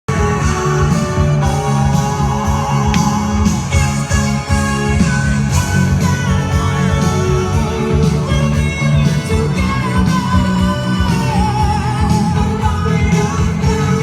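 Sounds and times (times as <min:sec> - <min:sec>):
music with guitar and bass: 0:00.1 - 0:14.0.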